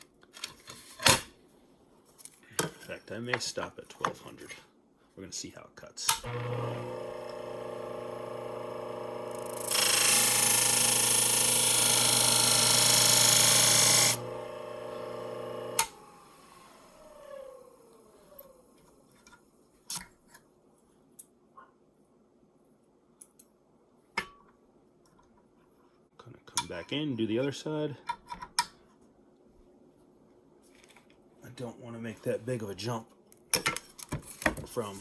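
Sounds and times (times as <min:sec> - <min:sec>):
sharpener motor humming: 0:06.2 - 0:18.4
blade grinding on abrasive plate: 0:06.3 - 0:16.0.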